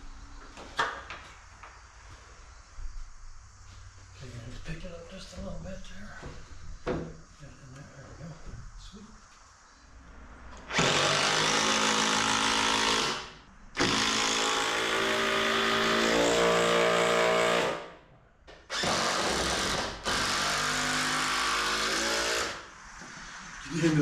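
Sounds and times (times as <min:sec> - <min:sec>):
power drill running: 0:10.6 - 0:17.9, 0:18.7 - 0:23.5.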